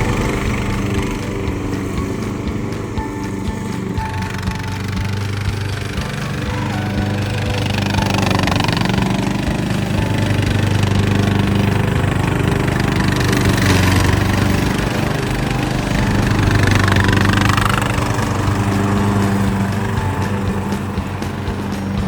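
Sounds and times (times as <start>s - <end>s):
engine running steadily: 0.0s - 22.0s.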